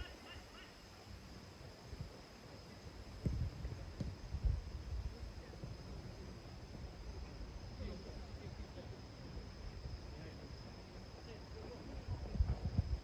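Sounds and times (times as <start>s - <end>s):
wind buffeting microphone: 3.1s - 5.2s, 12.0s - 13.0s.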